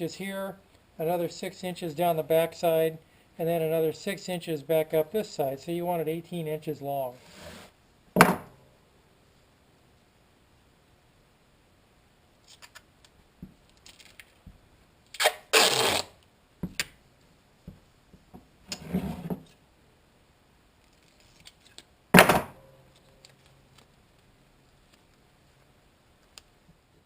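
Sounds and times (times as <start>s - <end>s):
duct tape ripping: 15.1s - 16.2s.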